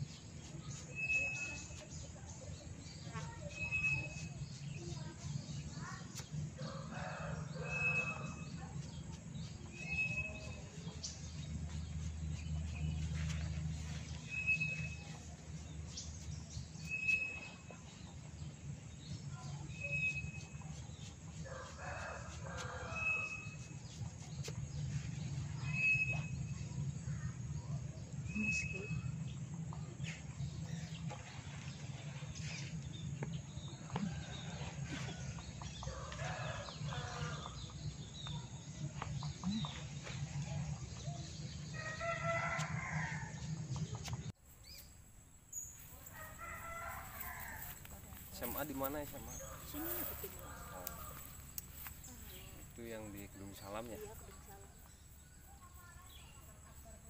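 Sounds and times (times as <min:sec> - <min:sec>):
bird chirping: 0:09.4 - 0:17.8.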